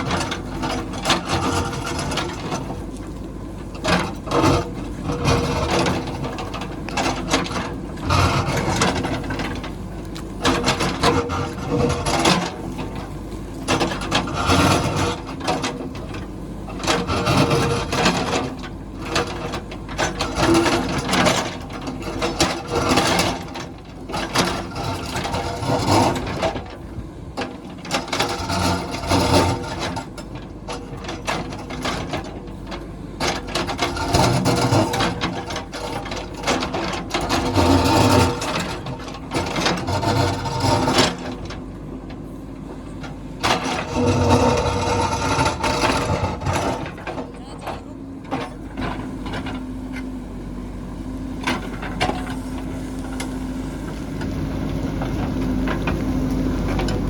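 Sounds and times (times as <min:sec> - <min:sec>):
diesel engine running: 0:00.0 - 0:57.0
bucket scraping and crunching rock: 0:43.6 - 0:47.2.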